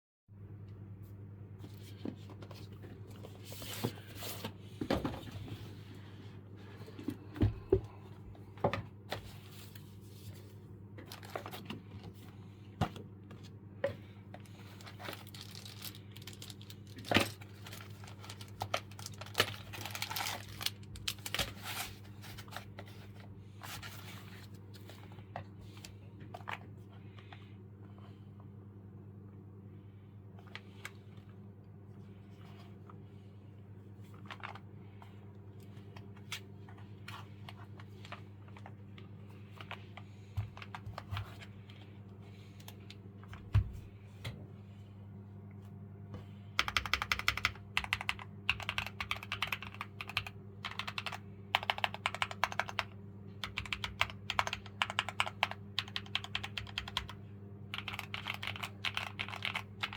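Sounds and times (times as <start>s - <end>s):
packaging crinkling and tearing: 14.8s - 22.0s.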